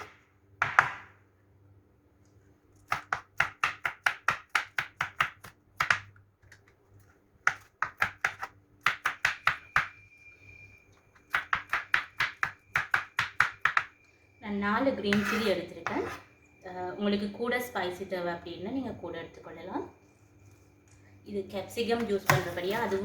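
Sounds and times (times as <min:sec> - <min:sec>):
knife chopping vegetables: 0:02.8 - 0:06.1, 0:07.4 - 0:10.0, 0:11.3 - 0:13.9.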